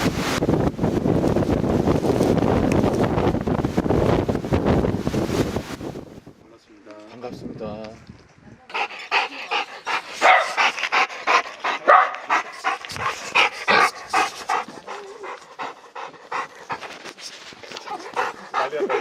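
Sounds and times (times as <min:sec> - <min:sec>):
dog panting rapidly: 0:08.7 - 0:19.0.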